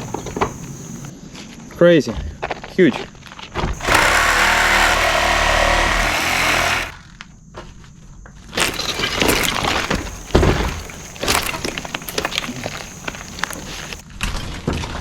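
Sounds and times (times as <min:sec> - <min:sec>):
wood knocks and clatter: 0:00.0 - 0:01.1, 0:08.6 - 0:14.0
wood splintering and grinding: 0:03.8 - 0:07.0, 0:08.6 - 0:14.0.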